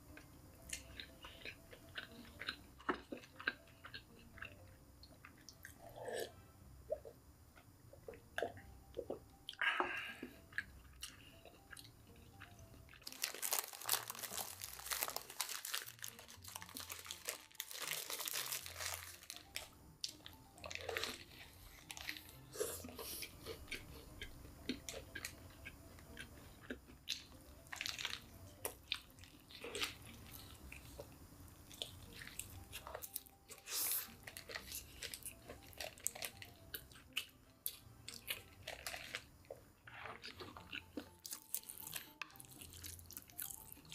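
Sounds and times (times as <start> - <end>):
crunching fried chicken: 12.4 - 22.6, 23.2 - 31.0, 31.7 - 43.9.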